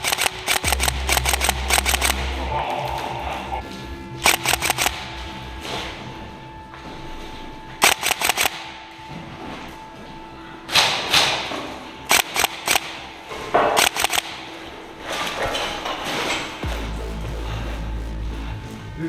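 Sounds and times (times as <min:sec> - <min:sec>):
airsoft guns firing bursts: 0:00.0 - 0:02.4.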